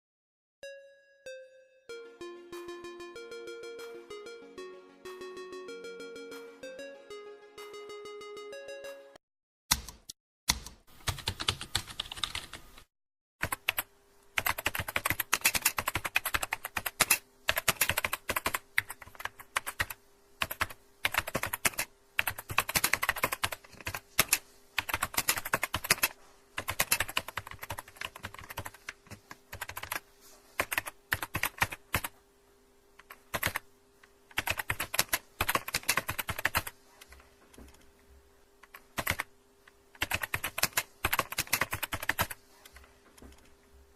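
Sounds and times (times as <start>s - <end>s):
keyboard typing: 9.7s - 30.0s, 30.6s - 32.1s, 33.0s - 33.6s, 34.3s - 37.8s, 38.6s - 43.5s.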